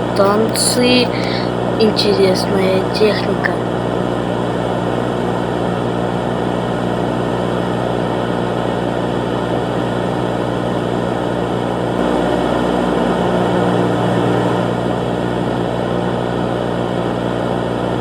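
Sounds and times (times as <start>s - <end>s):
steady droning hum: 0.0s - 3.7s.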